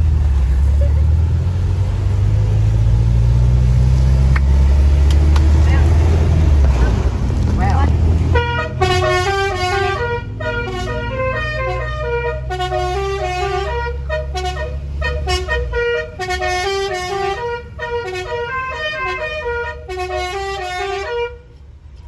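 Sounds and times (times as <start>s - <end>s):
low rumble: 0.0s - 11.4s
musical bus horn playing tune: 8.2s - 21.5s.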